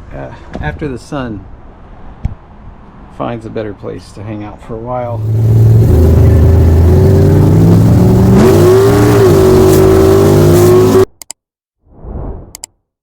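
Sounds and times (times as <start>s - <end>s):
vehicle engine running: 5.0s - 11.0s.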